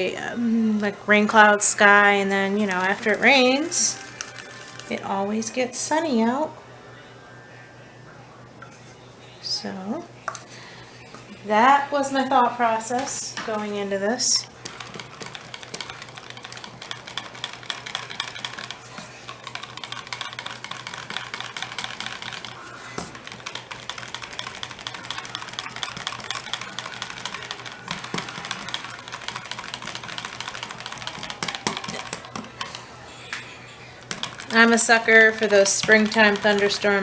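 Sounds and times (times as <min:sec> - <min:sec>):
utensils scraping small containers: 0:01.8 - 0:05.1, 0:12.9 - 0:33.4, 0:34.0 - 0:37.0.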